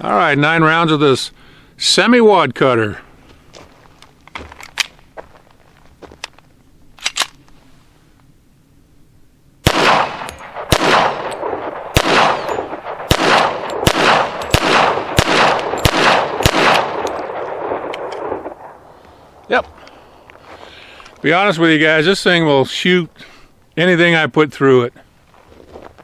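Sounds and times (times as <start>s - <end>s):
pistol shots with echo: 9.6s - 18.8s.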